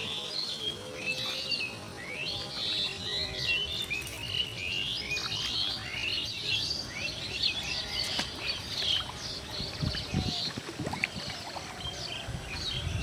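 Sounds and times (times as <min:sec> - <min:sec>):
birds chirping: 0:00.0 - 0:13.0.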